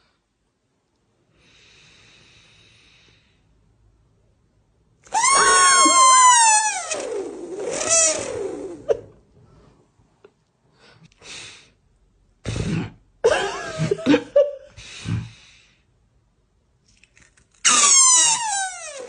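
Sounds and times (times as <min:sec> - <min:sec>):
person breathing or coughing: 0:12.4 - 0:13.0.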